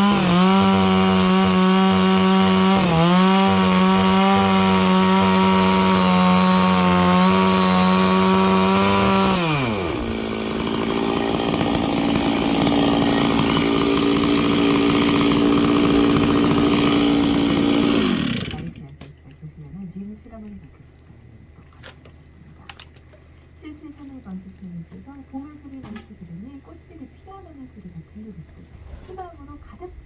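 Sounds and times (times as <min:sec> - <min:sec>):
chainsaw cutting log: 0:00.0 - 0:18.8
chainsaw idling: 0:00.0 - 0:18.8.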